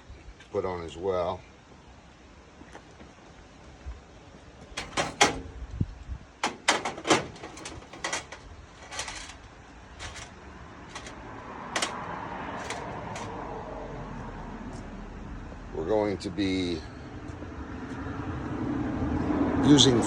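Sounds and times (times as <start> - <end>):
metal hardware clicks and knocks: 4.6 - 5.6, 6.4 - 13.4.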